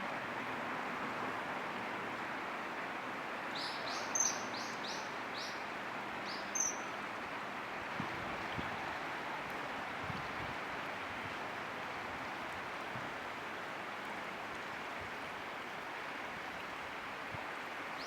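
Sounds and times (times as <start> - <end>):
background hiss: 0.0 - 18.0.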